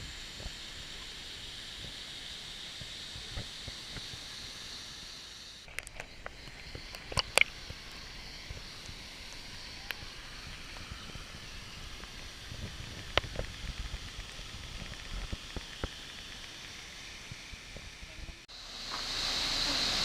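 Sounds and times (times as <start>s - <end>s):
waterfall rushing: 18.6s - 20.0s.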